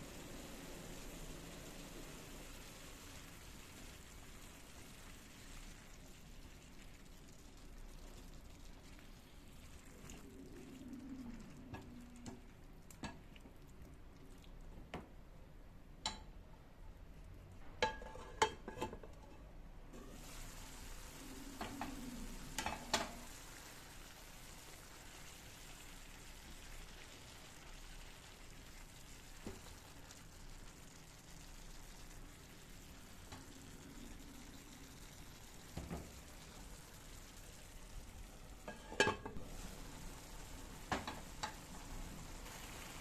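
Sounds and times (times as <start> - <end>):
food sizzling in a pan: 0.0 - 13.4, 20.0 - 43.0
utensil clinking on cookware: 17.8 - 19.4, 38.6 - 39.4.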